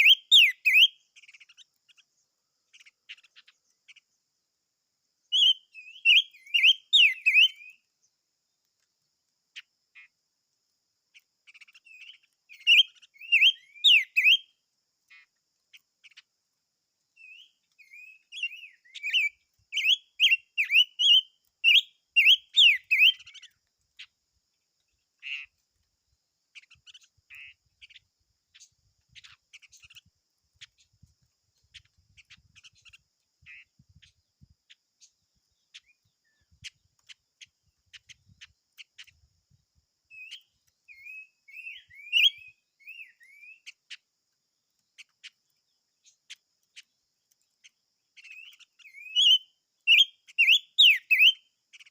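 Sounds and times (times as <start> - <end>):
songbird warbling: 0.0 - 4.1, 5.2 - 7.9, 11.1 - 14.5, 17.2 - 24.2, 24.8 - 25.6, 26.5 - 39.3, 40.1 - 44.1, 47.6 - 51.9
bird chips and ticks: 0.0 - 51.9.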